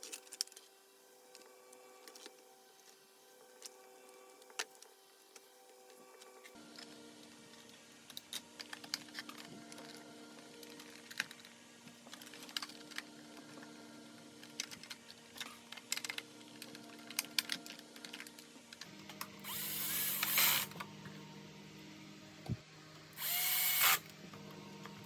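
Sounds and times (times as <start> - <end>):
small clicks of plastic parts: 0.0 - 0.7, 8.1 - 13.7, 14.4 - 19.3
electric screwdriver running: 19.4 - 20.7, 23.2 - 24.0.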